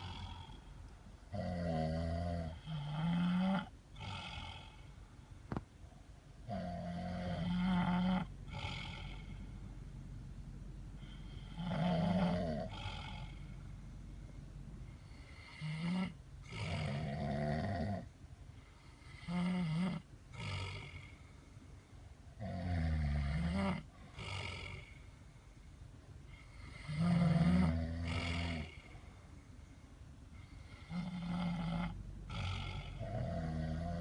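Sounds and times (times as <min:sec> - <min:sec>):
person snoring: 0:00.0 - 0:00.7, 0:01.3 - 0:04.9, 0:06.5 - 0:09.5, 0:11.0 - 0:13.6, 0:15.0 - 0:18.1, 0:19.0 - 0:21.2, 0:22.4 - 0:25.0, 0:26.3 - 0:28.9, 0:30.6 - 0:34.0.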